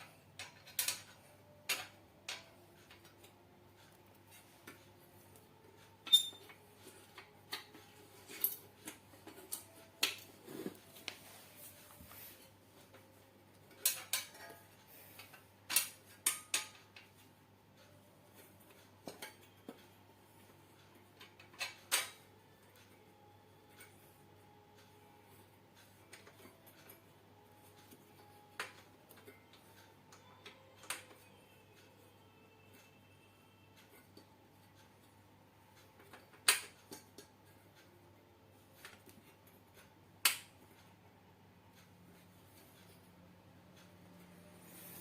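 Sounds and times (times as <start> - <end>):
metal hardware and tools clinking: 6.0 - 10.7.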